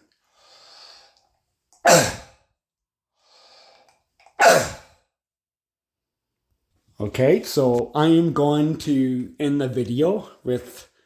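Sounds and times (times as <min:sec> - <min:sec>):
man breathing in: 0:00.2 - 0:01.3, 0:03.1 - 0:04.0
man's barking cough: 0:01.8 - 0:02.3, 0:04.4 - 0:04.8.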